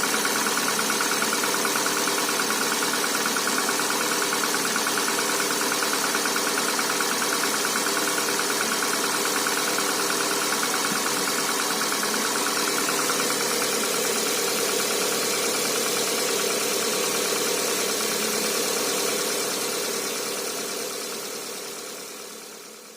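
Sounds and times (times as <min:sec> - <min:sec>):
engine idling with knocking: 0:00.0 - 0:22.9.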